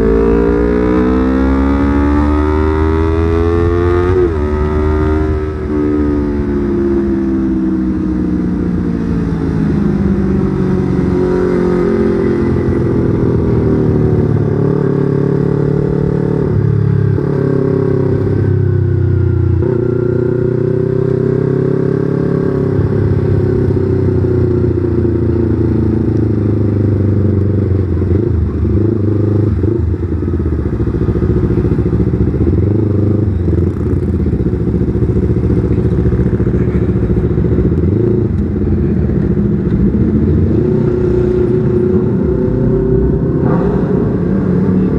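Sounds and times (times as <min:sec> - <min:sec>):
motorcycle engine revs climbing: 0:00.0 - 0:44.9.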